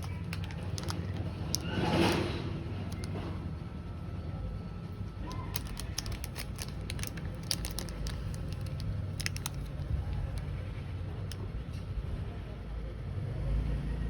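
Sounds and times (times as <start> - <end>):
packaging clicks and taps: 0.0 - 2.3, 2.9 - 3.2, 5.3 - 10.5.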